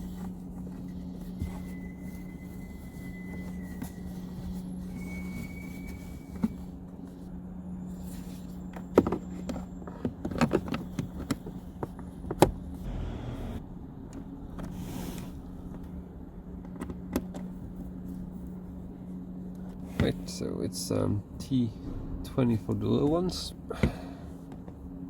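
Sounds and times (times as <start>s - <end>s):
steady low hum: 15.3s - 25.0s.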